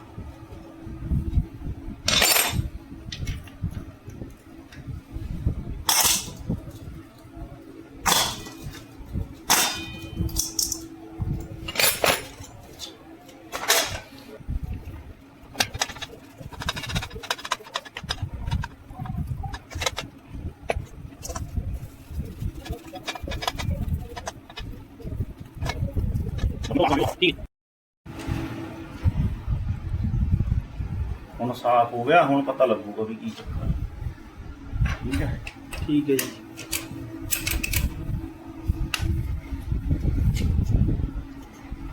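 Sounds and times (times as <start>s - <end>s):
steady low hum: 0.0s - 27.5s, 28.1s - 41.9s
metal tools clanking: 2.1s - 2.7s, 5.9s - 6.4s, 9.5s - 10.9s, 11.6s - 14.1s, 15.6s - 18.7s
sharp ringing metal strike: 9.5s - 10.5s.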